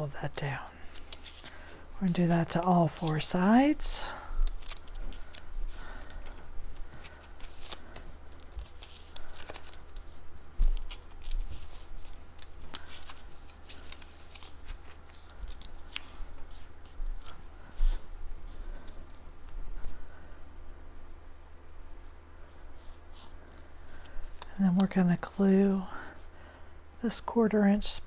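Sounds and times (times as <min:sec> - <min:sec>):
cardstock crackling and clicking: 0:00.8 - 0:17.8.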